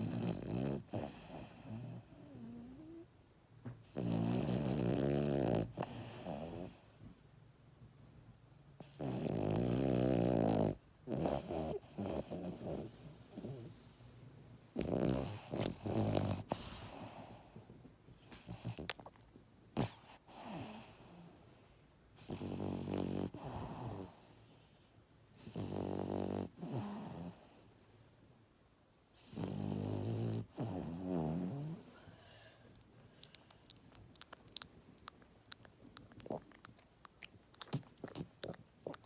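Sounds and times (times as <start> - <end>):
puppy snoring: 0.0 - 3.2, 3.8 - 7.0, 8.8 - 24.6, 25.4 - 27.7, 29.1 - 39.0
puppy breathing: 3.8 - 7.0, 14.8 - 19.0.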